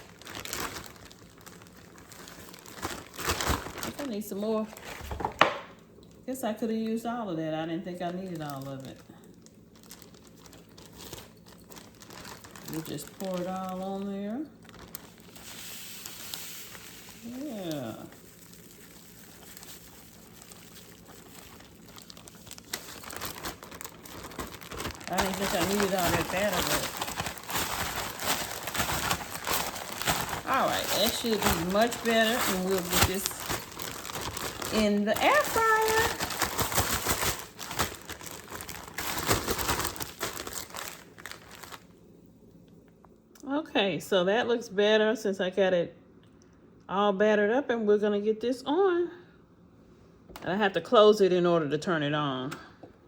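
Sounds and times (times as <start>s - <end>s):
fish rustling in cornmeal coating: 0.0s - 5.2s, 8.3s - 41.9s.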